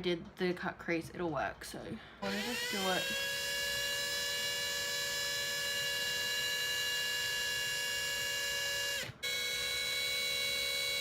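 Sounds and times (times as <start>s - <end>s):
cordless drill whining: 2.2s - 11.0s.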